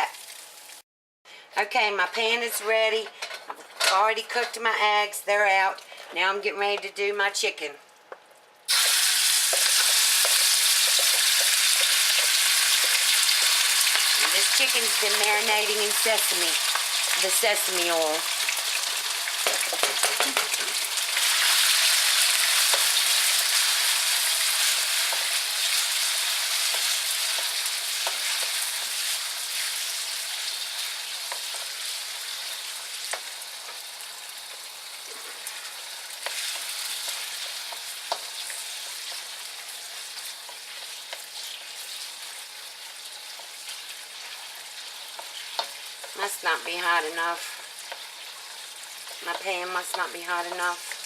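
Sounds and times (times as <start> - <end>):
chicken sizzling in oil: 8.7 - 51.0.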